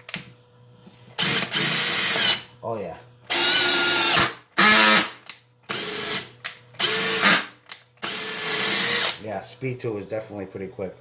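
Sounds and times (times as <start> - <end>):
cordless drill motor whining: 1.2 - 2.4, 3.3 - 9.2.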